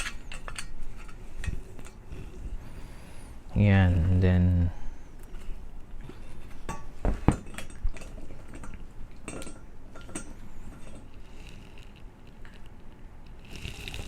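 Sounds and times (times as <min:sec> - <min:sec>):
metal parts clinking and knocking: 0:00.0 - 0:01.6.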